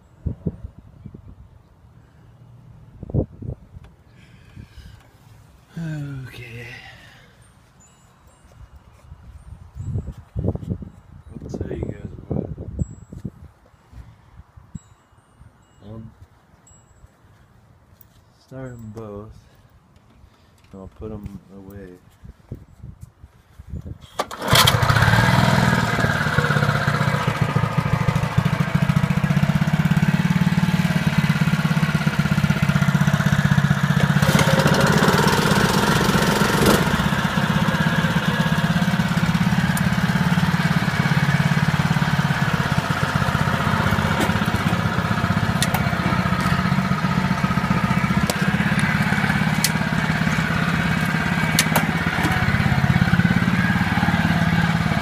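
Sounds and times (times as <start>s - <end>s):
lawn mower engine running: 24.2s - 55.0s.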